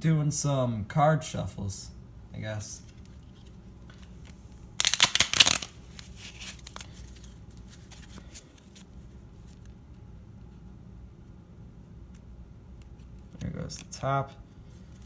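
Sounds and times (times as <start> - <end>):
playing cards riffle-shuffled: 2.8 - 9.8, 12.0 - 15.0.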